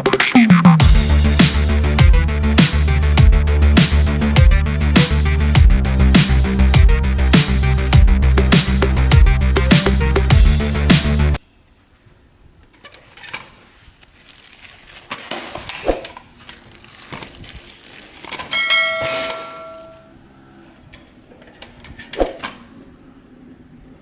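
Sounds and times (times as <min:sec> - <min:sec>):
bell-like ding: 0:18.5 - 0:20.2.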